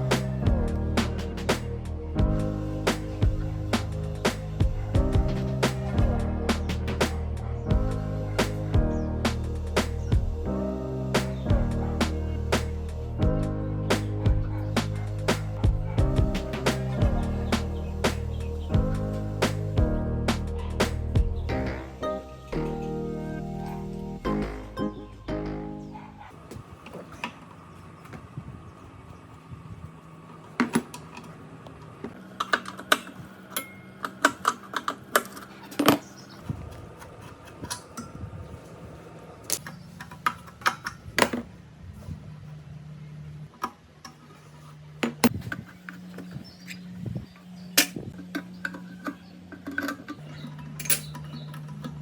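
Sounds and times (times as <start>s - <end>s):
metal tools clinking: 47.8s - 52.0s.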